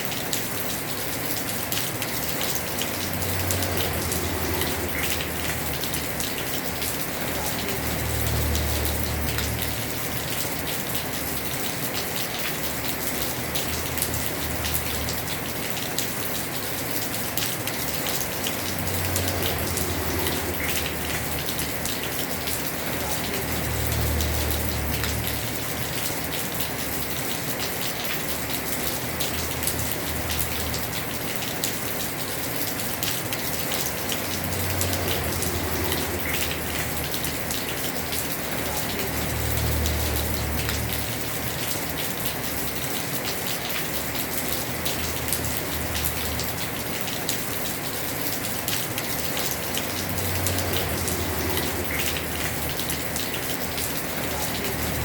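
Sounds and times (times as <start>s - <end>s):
heavy rain on a roof: 0.0s - 55.0s.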